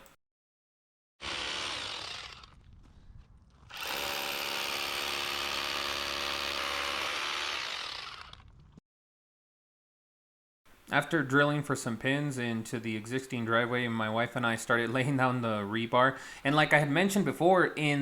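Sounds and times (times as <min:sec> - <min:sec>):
power tool running: 0:01.2 - 0:02.7, 0:03.7 - 0:08.5.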